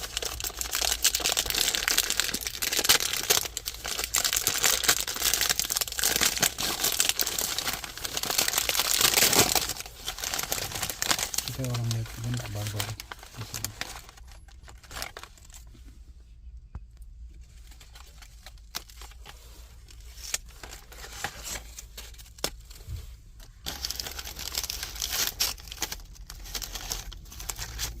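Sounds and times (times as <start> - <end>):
plastic snack packet crinkling: 0.0 - 15.7, 23.6 - 28.0.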